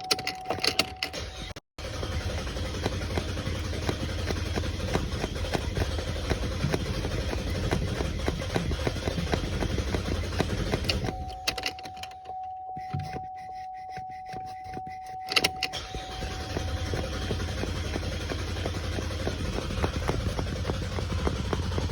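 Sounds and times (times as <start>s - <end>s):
car engine rattling and humming: 0.5s - 12.2s, 14.7s - 21.9s
electronic warning tone: 10.2s - 17.1s.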